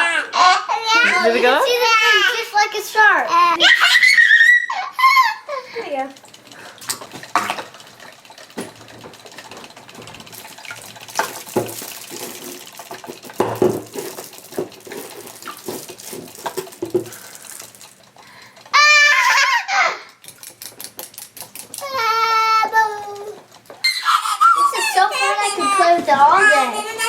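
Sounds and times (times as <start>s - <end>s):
child squealing: 0.0s - 2.4s, 3.5s - 5.6s, 18.7s - 20.2s, 21.8s - 23.2s, 23.8s - 27.0s
water splashing in a small tank: 3.0s - 19.5s
quick clicks: 20.2s - 21.9s.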